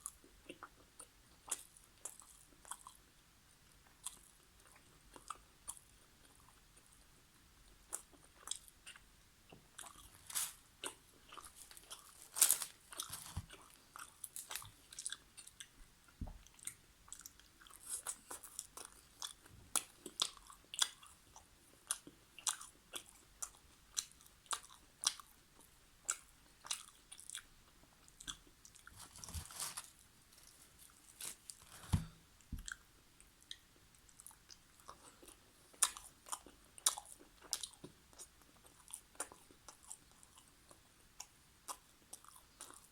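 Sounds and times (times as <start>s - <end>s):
chewing and biting: 10.8s - 15.8s, 16.4s - 29.5s, 33.4s - 42.9s.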